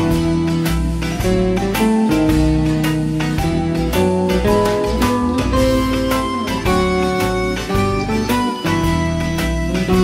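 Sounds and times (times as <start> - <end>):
guitar-led music with steady beat: 0.0 - 10.0.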